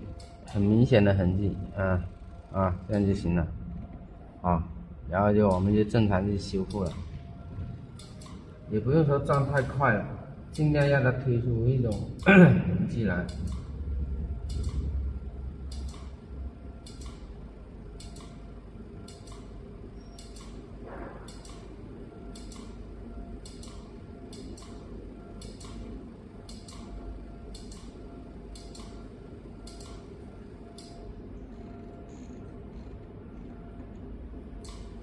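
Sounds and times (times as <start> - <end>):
low machine hum: 0.0 - 35.0
laser machine clicking shots: 0.1 - 0.5, 5.4 - 7.2, 7.9 - 8.5, 10.5 - 11.0, 11.8 - 12.3, 13.2 - 13.8, 14.4 - 15.0, 15.6 - 16.2, 16.8 - 19.6, 20.2 - 22.8, 23.4 - 31.1, 34.5 - 35.0.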